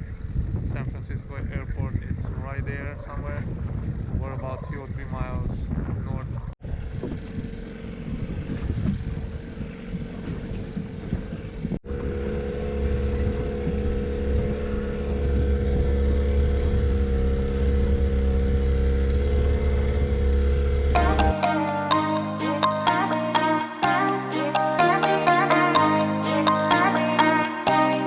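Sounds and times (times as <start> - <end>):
motorboat engine running: 6.7 - 21.0
music: 21.0 - 28.0.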